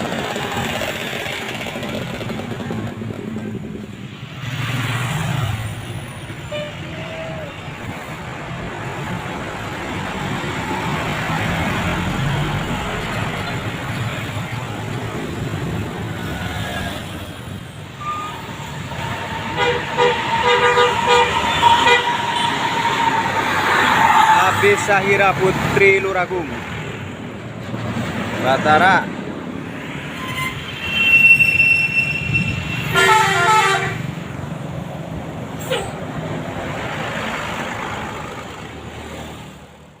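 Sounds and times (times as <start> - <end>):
bus engine rumble: 0.0 - 30.6, 32.2 - 40.0
tyre and road noise: 0.0 - 40.0
multi-tone bus horn tune: 6.5 - 7.0, 18.0 - 23.5, 32.1 - 34.2.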